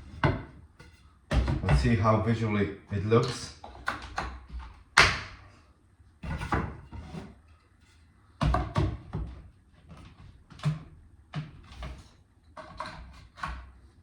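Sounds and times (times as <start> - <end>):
wooden knocks and clatter: 0.0 - 2.0, 3.6 - 5.4, 6.2 - 13.7.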